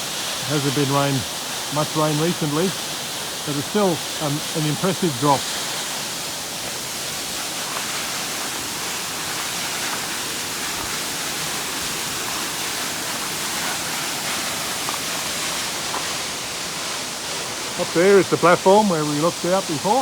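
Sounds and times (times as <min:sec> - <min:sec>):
waterfall onto rocks: 0:00.0 - 0:20.0.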